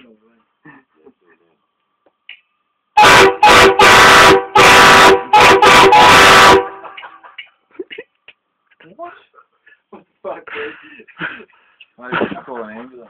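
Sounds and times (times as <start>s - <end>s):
train horn blasts: 3.0s - 6.9s.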